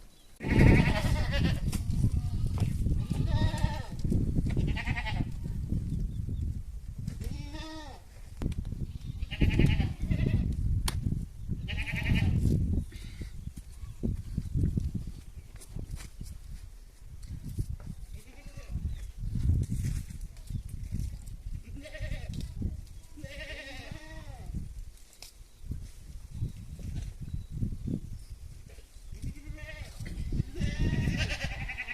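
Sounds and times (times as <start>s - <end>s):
goats bleating: 0.4s - 3.9s, 23.2s - 24.4s, 29.2s - 31.9s.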